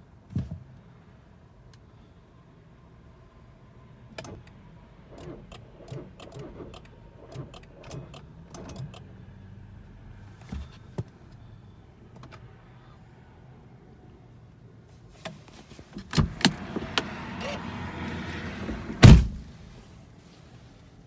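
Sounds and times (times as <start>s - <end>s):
thumps: 15.6s - 19.8s
diesel engine cranking slowly: 16.0s - 19.8s
engine running low: 16.0s - 19.8s.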